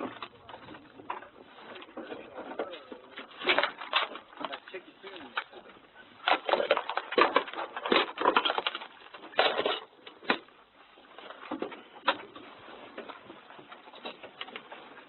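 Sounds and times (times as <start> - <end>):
clattering and knocking: 5.3 - 10.5.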